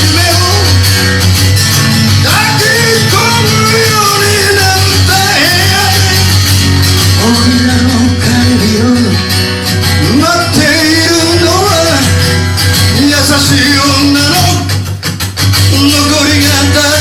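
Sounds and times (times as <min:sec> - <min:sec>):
person singing: 0:00.0 - 0:00.8, 0:02.1 - 0:06.4, 0:07.0 - 0:09.4, 0:10.0 - 0:12.2, 0:12.9 - 0:14.8
guitar: 0:00.0 - 0:17.0
steady bass line: 0:00.0 - 0:17.0.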